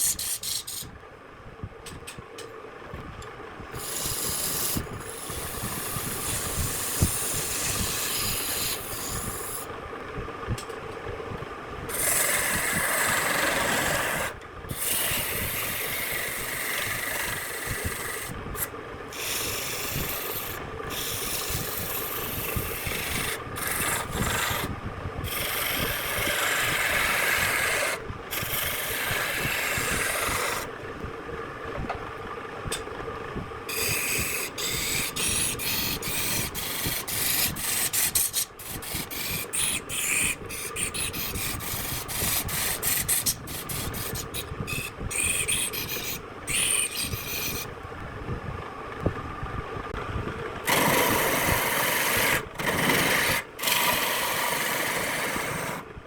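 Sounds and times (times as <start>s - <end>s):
tool scraping spinning wood: 0.0s - 0.9s, 3.8s - 9.7s, 11.9s - 30.7s, 33.7s - 47.8s, 50.6s - 55.9s
lathe motor hum: 11.8s - 30.8s, 33.4s - 48.0s, 50.4s - 56.0s.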